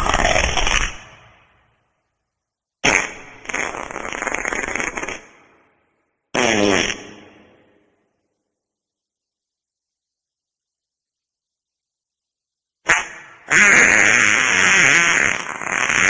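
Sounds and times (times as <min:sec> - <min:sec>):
wet fart sounds: 0:00.0 - 0:01.1, 0:02.8 - 0:05.5, 0:06.3 - 0:07.6, 0:12.8 - 0:16.0.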